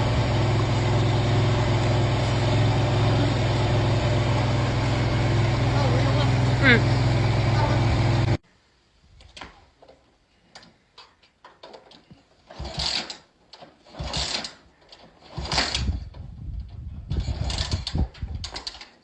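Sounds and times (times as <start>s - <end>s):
motorcycle engine turning over: 0.0s - 8.4s, 11.6s - 19.0s
kick-start lever ratcheting: 12.5s - 16.0s.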